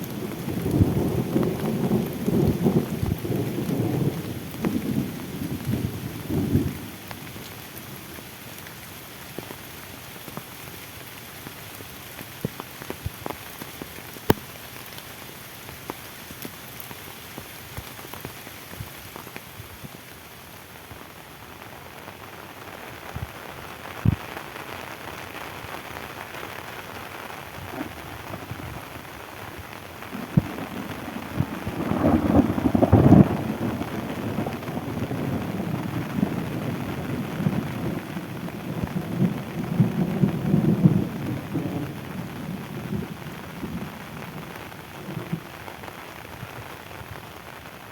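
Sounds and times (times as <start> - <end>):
low thunder rumble: 0.0 - 7.5, 27.4 - 45.6
steady rain falling: 0.0 - 47.9.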